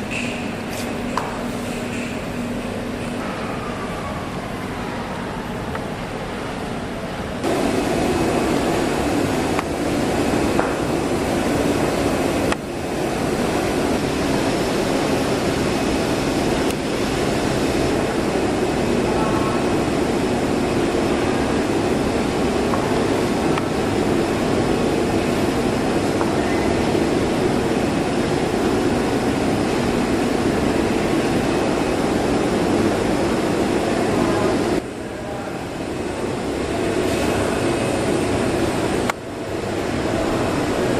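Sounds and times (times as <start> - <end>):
leather cutting machine running: 7.4 - 18.8.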